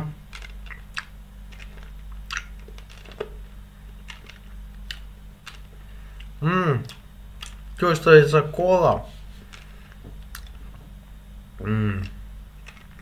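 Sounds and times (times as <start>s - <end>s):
wet mouth clicks sucking candy: 0.3s - 3.4s.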